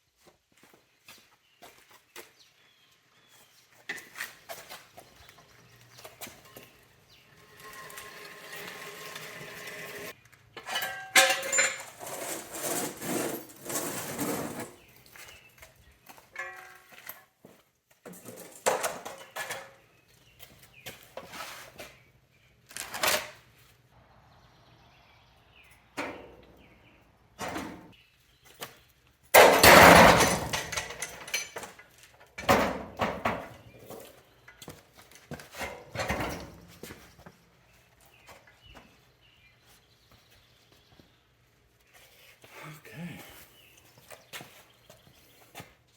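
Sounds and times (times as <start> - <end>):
metal parts and tools clanking: 6.0 - 14.8, 16.3 - 17.2, 29.4 - 33.5, 35.6 - 37.0.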